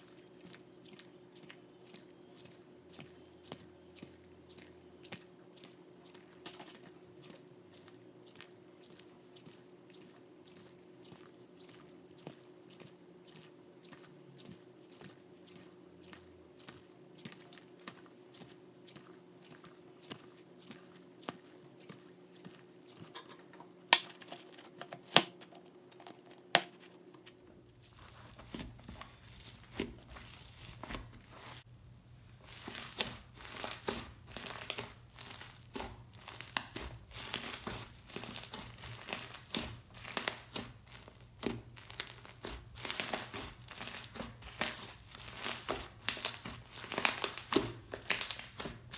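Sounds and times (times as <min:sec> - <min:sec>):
slime crinkling and crackling: 0:24.0 - 0:48.9.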